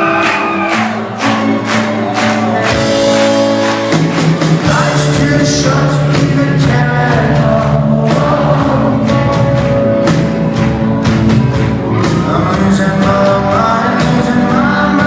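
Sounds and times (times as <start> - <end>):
drum beat: 0.0 - 15.0
rock band playing live: 0.0 - 15.0
person singing: 4.4 - 10.3, 11.6 - 15.0.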